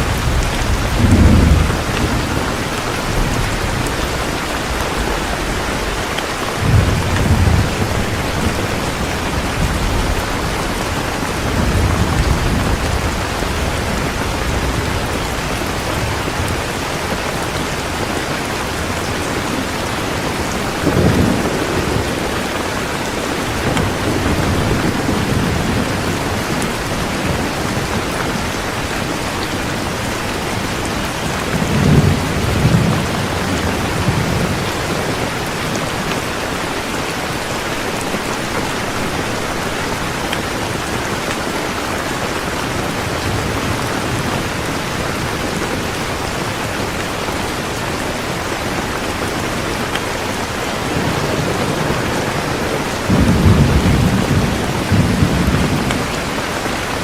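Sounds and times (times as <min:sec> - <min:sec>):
thunder rolling: 0:00.0 - 0:17.4, 0:18.0 - 0:35.4, 0:50.8 - 0:56.3
heavy rain falling: 0:00.0 - 0:57.0.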